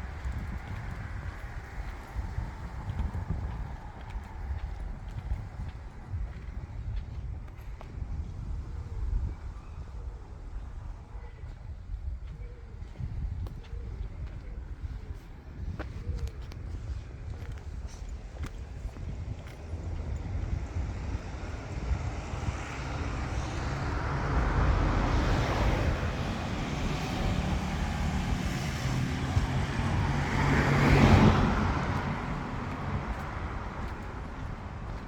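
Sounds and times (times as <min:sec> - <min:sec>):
vehicle engine hum: 0:14.0 - 0:35.0.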